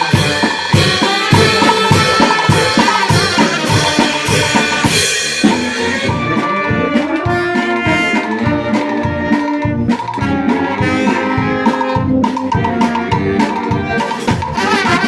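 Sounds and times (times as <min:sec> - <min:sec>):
cymbal crashes: 0:00.0 - 0:06.2
brass band with drums: 0:00.0 - 0:15.0.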